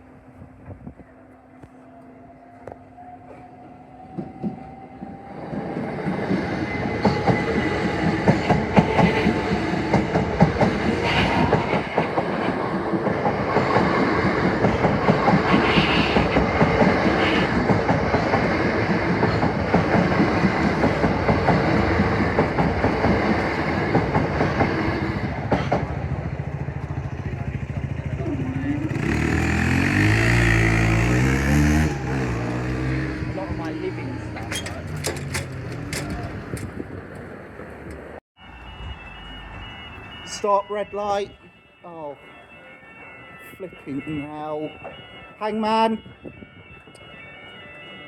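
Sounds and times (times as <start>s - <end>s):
train wheel clatter over rail joints: 6.3s - 26.0s, 34.4s - 38.1s.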